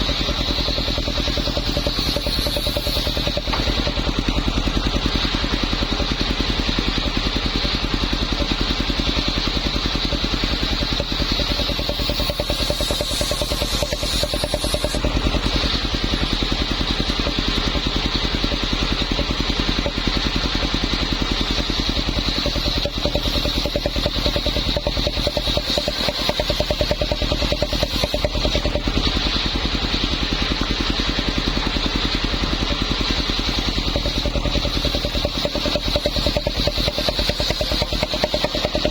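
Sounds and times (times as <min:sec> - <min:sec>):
circular saw engine running: 0:00.0 - 0:38.9
high saw whine: 0:00.0 - 0:38.9.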